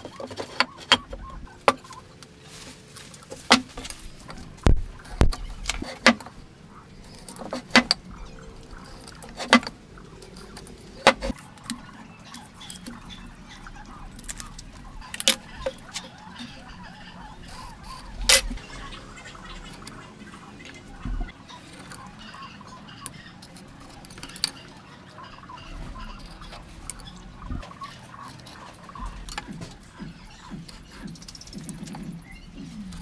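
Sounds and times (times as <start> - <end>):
wood tools tapping and knocking: 0.0 - 2.0, 3.2 - 6.4, 7.1 - 8.1, 8.7 - 11.8.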